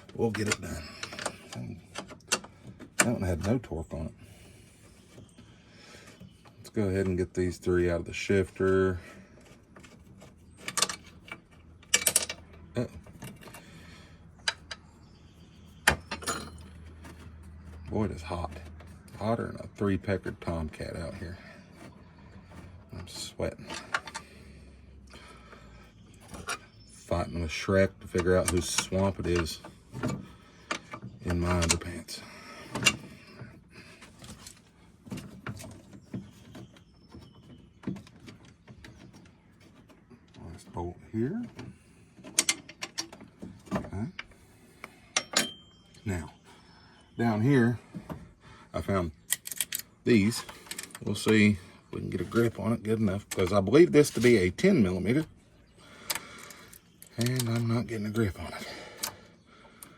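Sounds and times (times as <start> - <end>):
hand tools clicking on metal: 26.2 - 32.1, 49.2 - 51.6, 55.9 - 59.9.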